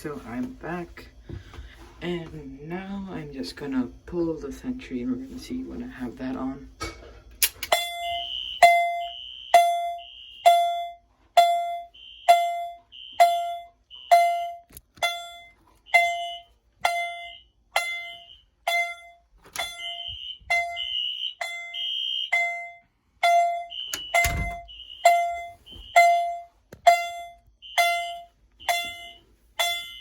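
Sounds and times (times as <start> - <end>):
fire alarm chime: 7.6 - 30.0.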